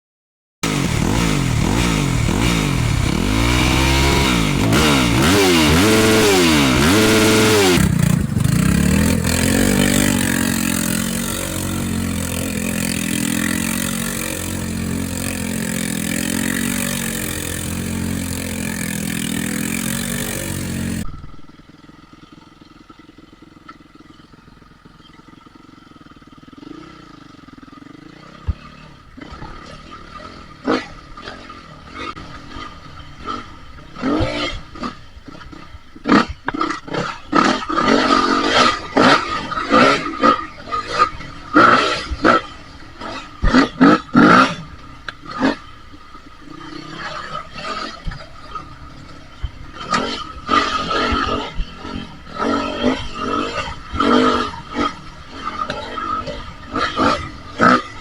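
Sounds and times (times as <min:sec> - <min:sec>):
dirt bike engines revving: 0:00.6 - 0:58.0
distant engine: 0:00.6 - 0:58.0.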